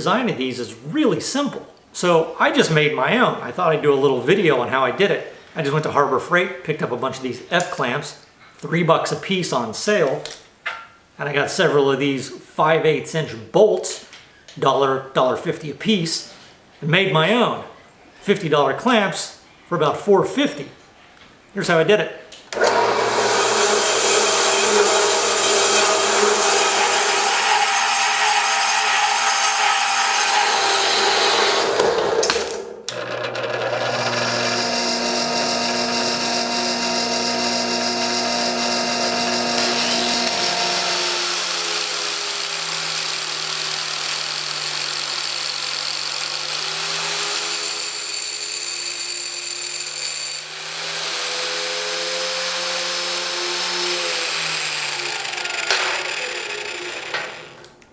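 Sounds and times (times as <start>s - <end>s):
power tool grinding metal: 22.6s - 57.7s.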